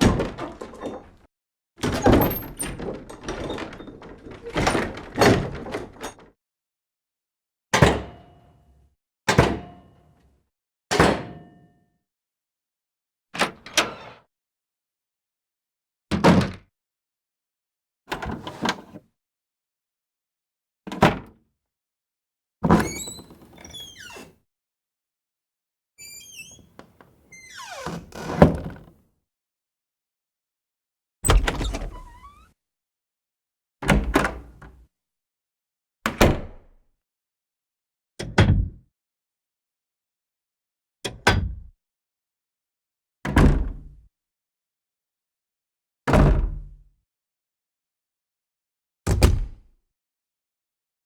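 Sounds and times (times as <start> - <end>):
door creaking: 0.0 - 6.4, 22.6 - 24.4, 26.0 - 28.9, 31.2 - 32.6, 33.9 - 34.6
door hinges squeaking: 1.9 - 6.3, 22.6 - 24.3, 26.0 - 28.8, 31.2 - 32.6
door shutting with thuds: 31.2 - 32.5, 33.8 - 34.8.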